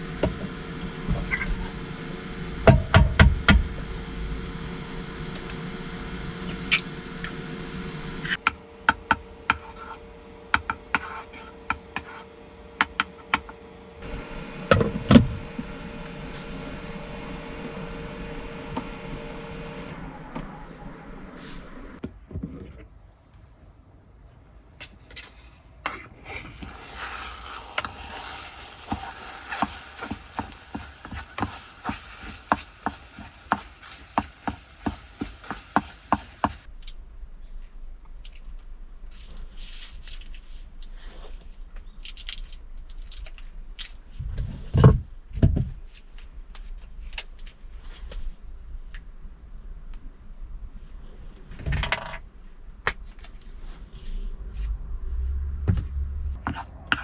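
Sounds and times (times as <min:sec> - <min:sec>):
utensil scraping in a bowl: 0:26.2 - 0:36.7, 0:56.4 - 0:57.0.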